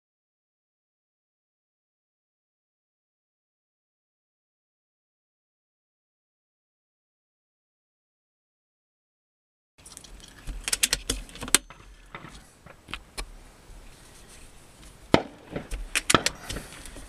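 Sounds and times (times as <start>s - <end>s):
air rifle handling clicks: 9.8s - 13.3s, 15.5s - 17.0s.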